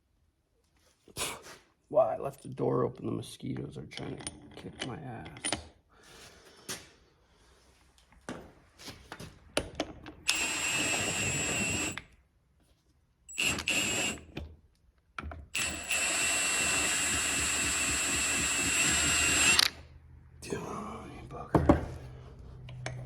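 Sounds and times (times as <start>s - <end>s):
power drill driving bolts: 10.2s - 12.1s, 13.3s - 14.4s, 15.5s - 19.8s.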